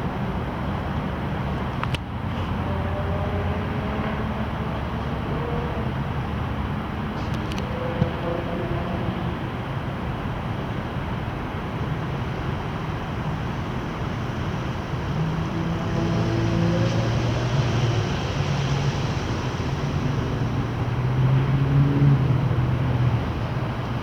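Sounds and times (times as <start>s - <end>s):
jet airliner flying past: 11.6s - 24.0s.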